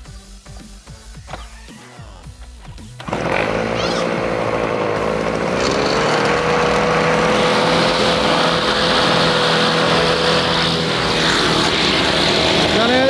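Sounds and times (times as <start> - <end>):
brush cutter engine running: 3.0 - 13.0.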